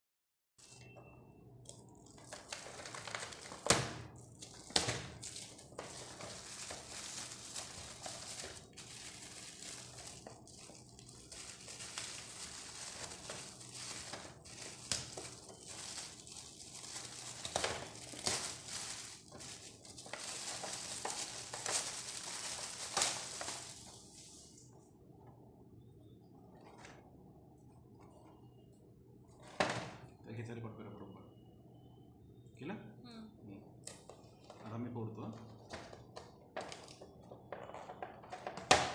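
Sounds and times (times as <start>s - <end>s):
plastic and cardboard crinkling: 1.7s - 24.6s, 35.4s - 38.9s.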